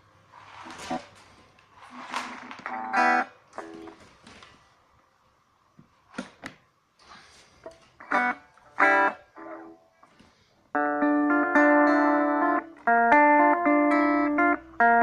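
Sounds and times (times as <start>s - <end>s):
guitar strumming chords: 2.6s - 4.0s, 8.0s - 9.8s, 10.7s - 15.0s.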